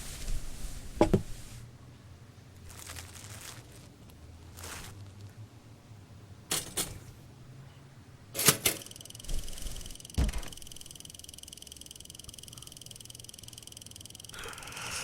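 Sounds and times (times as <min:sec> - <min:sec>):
high-pitched ringing: 0:08.8 - 0:15.0.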